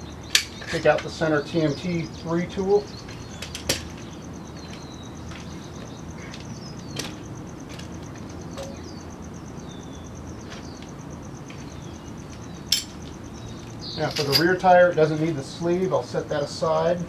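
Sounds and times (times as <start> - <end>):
birds chirping: 0.0 - 17.0
tool parts clicking and knocking: 0.3 - 1.2, 3.1 - 4.8, 12.6 - 13.1, 14.0 - 14.6.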